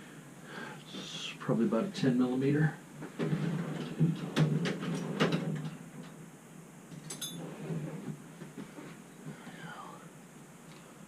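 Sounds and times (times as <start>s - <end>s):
metal tools clinking: 7.0s - 7.4s.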